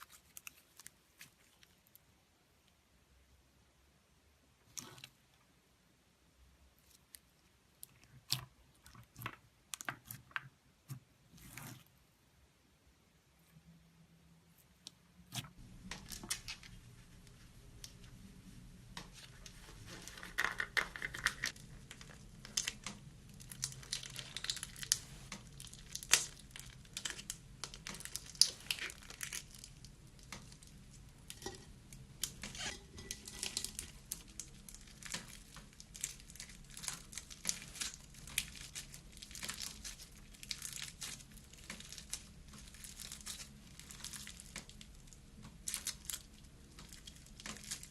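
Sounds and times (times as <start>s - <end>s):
slime crackling and popping: 19.0s - 47.9s.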